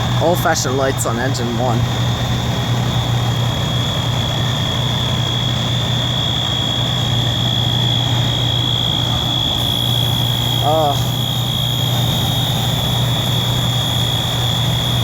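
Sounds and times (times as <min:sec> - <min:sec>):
diesel engines idling: 0:00.0 - 0:15.0
fire alarm high-pitched tone: 0:09.5 - 0:15.0.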